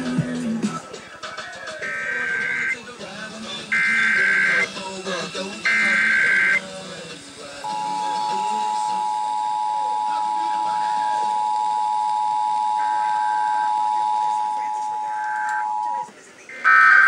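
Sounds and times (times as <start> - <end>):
digital data burst: 1.8 - 2.8, 3.6 - 6.8
two-tone alert signal: 1.8 - 2.8, 5.7 - 6.6, 7.6 - 16.1.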